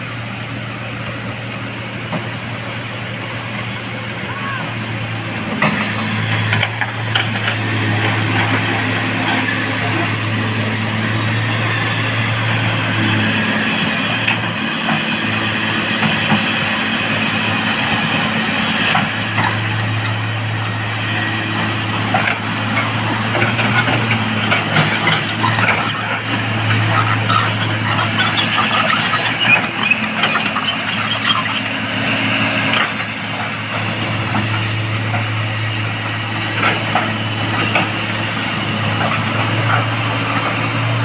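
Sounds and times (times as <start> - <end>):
diesel machinery running: 0.0 - 41.0.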